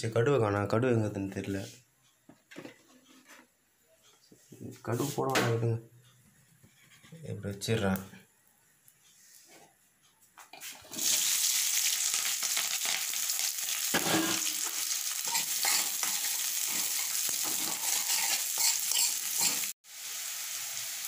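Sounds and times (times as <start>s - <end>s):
onions sizzling in oil: 10.8s - 21.0s
spatula scraping pan: 14.0s - 19.8s.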